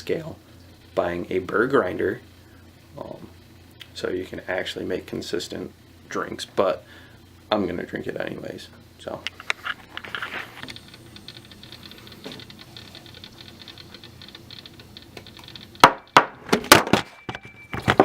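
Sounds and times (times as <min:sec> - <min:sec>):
faint ticking and rustling: 0:09.1 - 0:16.2
hard objects clicking and knocking: 0:12.2 - 0:18.0.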